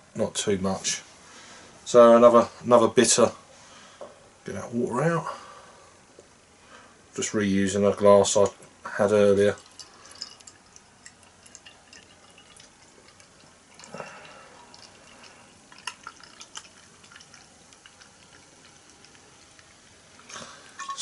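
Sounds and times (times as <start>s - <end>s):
beer pouring into a glass: 9.1s - 21.0s.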